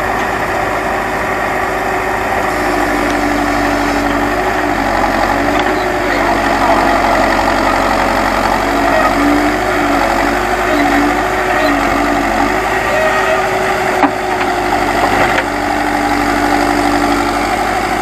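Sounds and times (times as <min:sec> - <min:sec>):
diesel engine running: 0:00.0 - 0:18.0.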